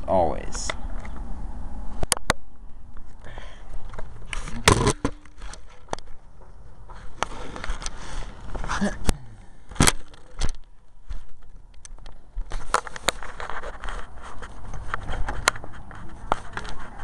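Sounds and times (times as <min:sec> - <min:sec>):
rustling: 0:03.8 - 0:08.8, 0:09.6 - 0:17.0
sharp clicks and knocks: 0:03.9 - 0:06.6.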